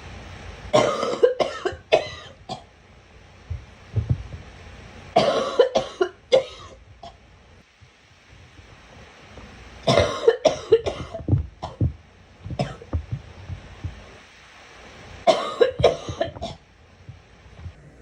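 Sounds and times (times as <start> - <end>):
girl coughing: 0.8 - 2.4, 5.2 - 6.8, 9.9 - 11.9, 15.3 - 16.6.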